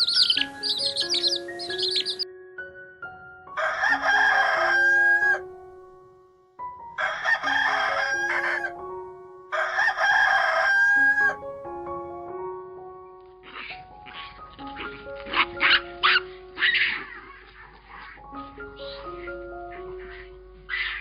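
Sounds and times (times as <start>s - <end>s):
gentle background music: 0.0s - 21.0s
rooster crowing: 3.6s - 5.4s, 7.0s - 8.8s, 9.5s - 11.4s.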